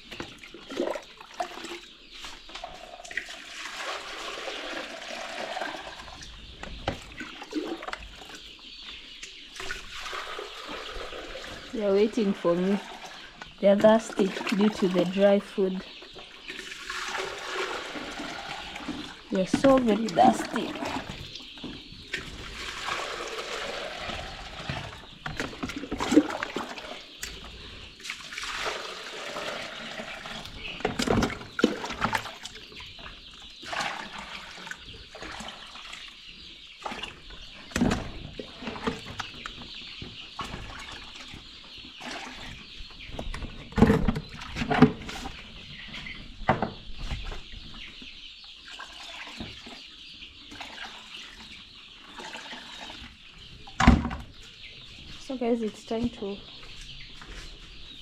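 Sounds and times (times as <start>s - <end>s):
chicks peeping: 5.8s - 28.1s, 29.2s - 58.0s
water splashing: 9.5s - 15.8s, 16.4s - 21.3s, 22.2s - 27.1s.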